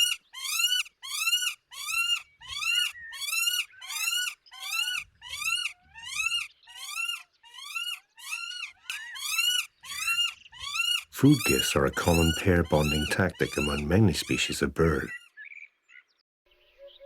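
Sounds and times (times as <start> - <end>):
goshawk calling: 0.0 - 15.5.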